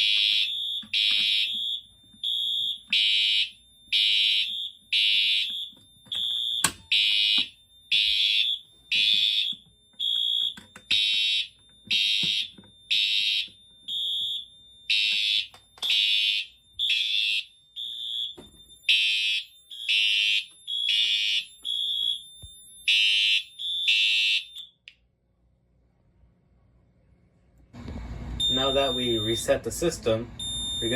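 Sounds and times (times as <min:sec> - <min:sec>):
fire alarm horn blasts: 0:00.0 - 0:24.7, 0:28.4 - 0:29.8, 0:30.4 - 0:30.9.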